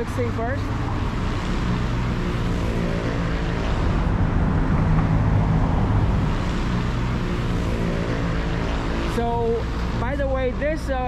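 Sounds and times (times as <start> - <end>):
road traffic: 0.0 - 11.0
vehicle engine droning: 0.0 - 11.0.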